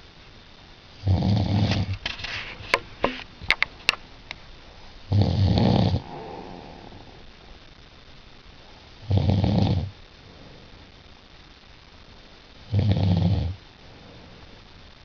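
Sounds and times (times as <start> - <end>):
person snoring: 5.1 - 7.4.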